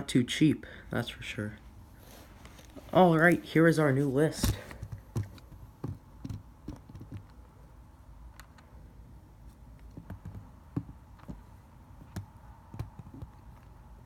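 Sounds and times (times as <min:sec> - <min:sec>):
computer keyboard clicking: 0:04.9 - 0:07.4, 0:09.8 - 0:11.4.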